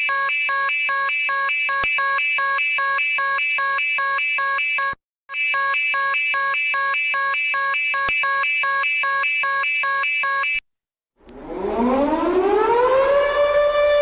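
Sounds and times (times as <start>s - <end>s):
two-tone electronic warning: 0.0s - 10.6s
civil defense siren wailing: 11.4s - 14.0s.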